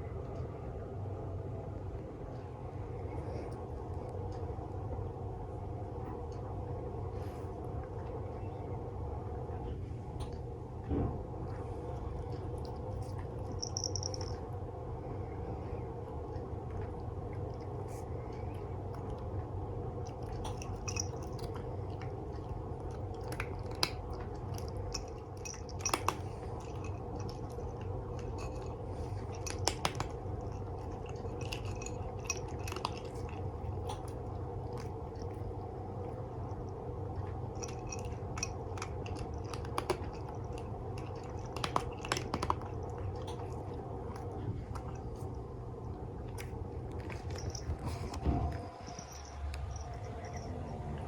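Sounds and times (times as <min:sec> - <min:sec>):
steady low hum: 0:00.0 - 0:51.0
cat crunching dry food: 0:11.4 - 0:14.8, 0:16.0 - 0:51.0.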